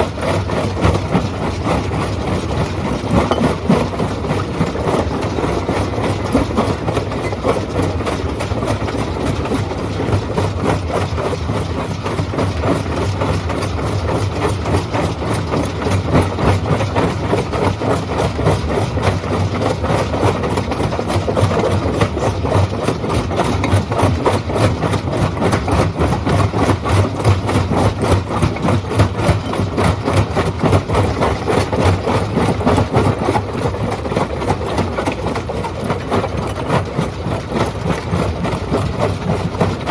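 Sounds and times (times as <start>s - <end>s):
stone crushing machine drone: 0.0s - 39.9s
rock knocking and clattering: 2.7s - 4.5s.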